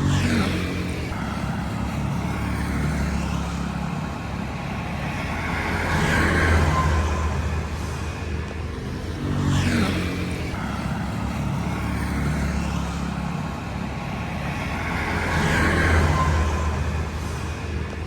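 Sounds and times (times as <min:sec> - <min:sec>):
traffic engine hum: 0:00.0 - 0:18.0
vehicles passing by: 0:00.0 - 0:18.0.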